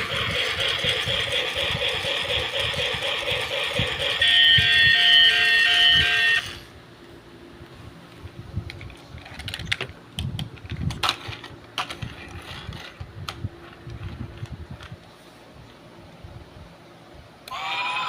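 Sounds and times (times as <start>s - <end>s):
clicks and knocks of objects handled: 8.1s - 15.0s.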